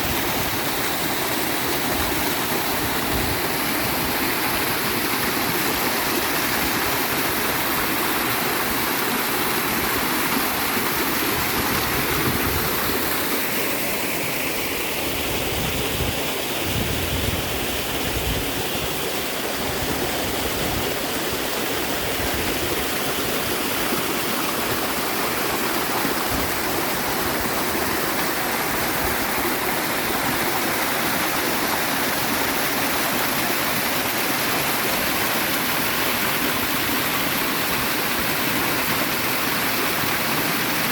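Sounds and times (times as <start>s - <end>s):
river water rushing: 0.0s - 40.9s
small waterfall splashing: 0.0s - 40.9s.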